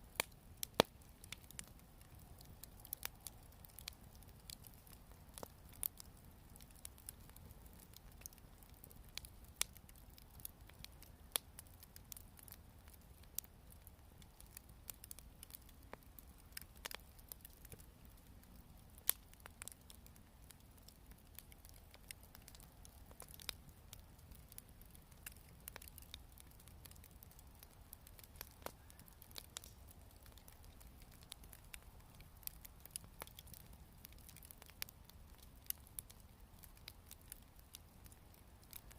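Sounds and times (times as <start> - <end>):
wood fire crackling: 0.0 - 38.9
sharp pops and snaps: 14.3 - 38.9.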